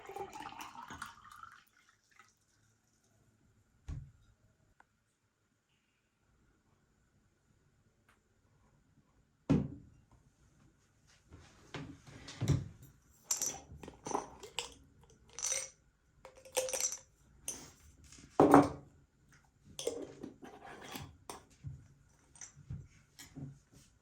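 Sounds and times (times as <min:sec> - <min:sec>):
dishes and utensils clinking: 0:19.8 - 0:21.5.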